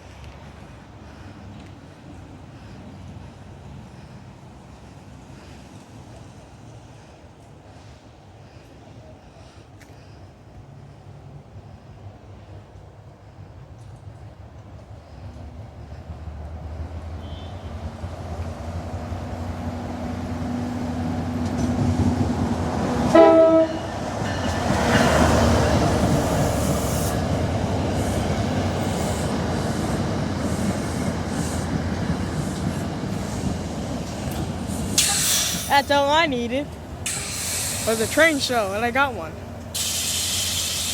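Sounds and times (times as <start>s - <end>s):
train rumbling and rattling: 0.0s - 40.9s
train horn blast: 17.2s - 18.0s, 23.1s - 24.0s.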